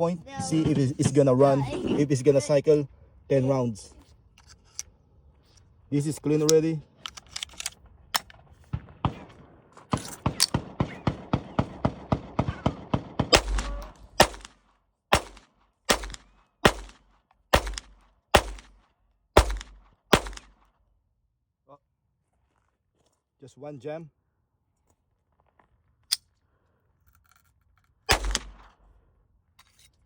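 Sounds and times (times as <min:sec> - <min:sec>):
pistol shots cracking: 0:08.7 - 0:18.8, 0:19.4 - 0:20.6, 0:28.1 - 0:28.7.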